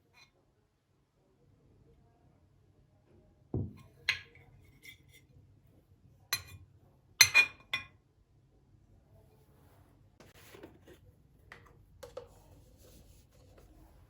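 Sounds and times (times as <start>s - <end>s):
glass clinking: 7.2s - 7.9s.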